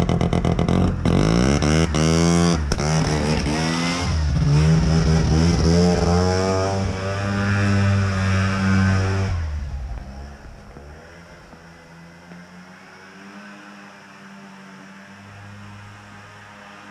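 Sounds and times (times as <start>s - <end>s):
snowmobile engine revving: 0.0s - 16.9s
quiet steady engine hum: 9.2s - 12.7s.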